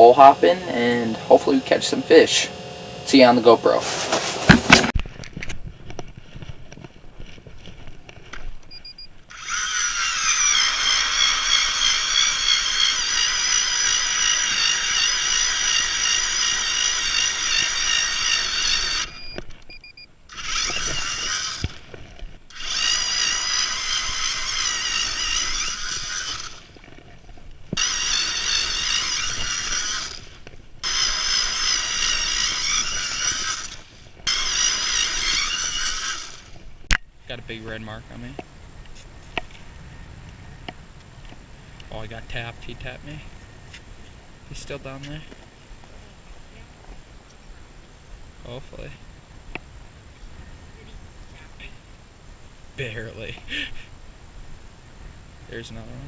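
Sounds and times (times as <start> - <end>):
power ice auger drilling: 0.0 - 5.0, 9.3 - 19.4, 20.3 - 36.9.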